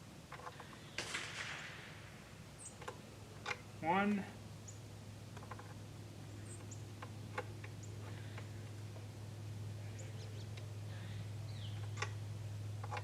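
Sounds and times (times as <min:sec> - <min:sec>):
steady low hum: 0:00.0 - 0:13.0
small birds chirping: 0:02.5 - 0:05.0, 0:06.0 - 0:13.0.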